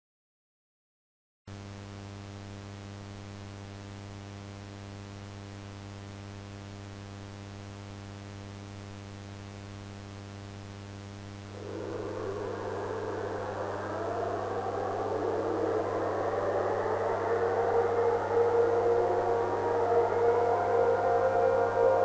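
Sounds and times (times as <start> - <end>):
rushing rumble: 11.5 - 22.0.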